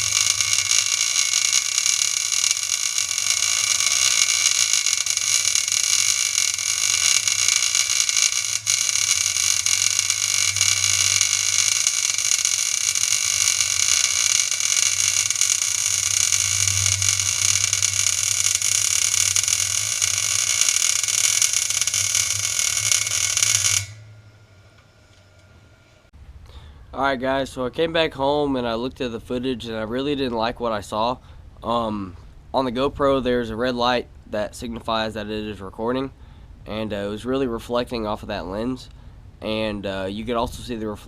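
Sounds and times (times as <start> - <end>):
electric arc hissing: 0.0 - 24.2
low hum: 0.0 - 29.4.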